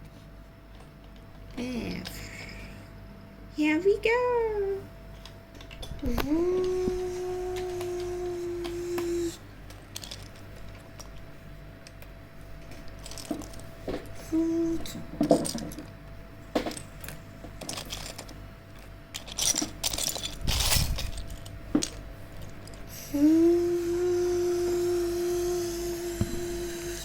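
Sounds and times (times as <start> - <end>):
plastic toy pieces clattering: 9.9 - 11.1, 12.9 - 13.6, 15.2 - 15.9, 17.6 - 18.4, 19.1 - 22.8.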